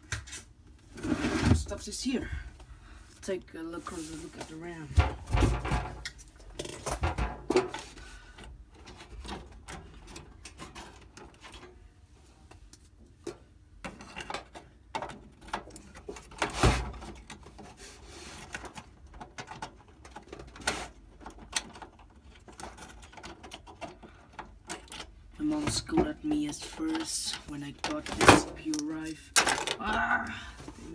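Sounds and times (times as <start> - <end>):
computer parts clicking and rustling: 18.4 - 30.9.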